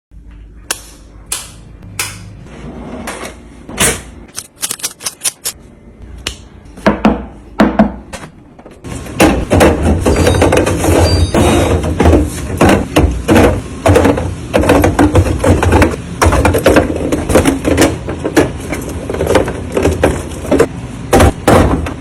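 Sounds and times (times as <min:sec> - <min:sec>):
food containers clicking and knocking: 0:11.7 - 0:22.0.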